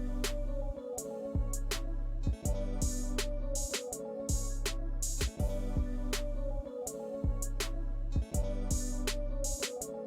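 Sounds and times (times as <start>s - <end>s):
hi-hat: 0.0s - 10.0s
kick drum: 1.4s - 1.7s, 2.3s - 3.2s, 4.3s - 4.6s, 5.2s - 6.1s, 7.2s - 7.6s, 8.2s - 9.0s.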